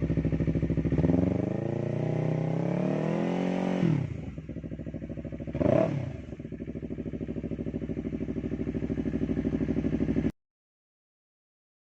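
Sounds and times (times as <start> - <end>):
motorcycle engine idling: 0.0 - 2.3, 4.0 - 10.3.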